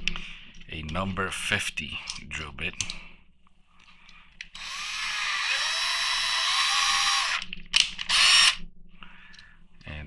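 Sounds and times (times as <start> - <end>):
power drill drilling: 4.6 - 8.6.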